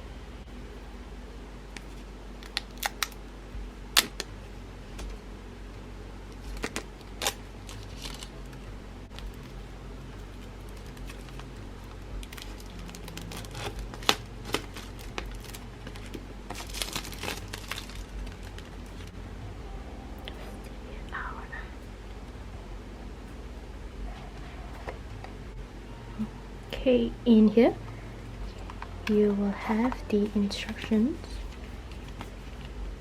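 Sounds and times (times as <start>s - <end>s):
packaging crinkling: 1.8s - 3.2s, 6.4s - 9.6s, 10.2s - 19.2s.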